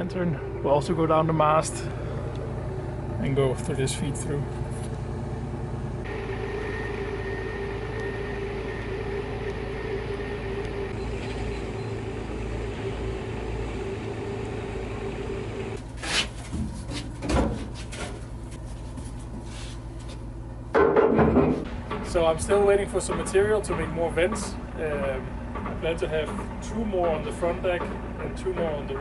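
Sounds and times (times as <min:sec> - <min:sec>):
mechanical hum with faint whine: 0:00.0 - 0:29.0
knocks and clatters: 0:20.7 - 0:29.0.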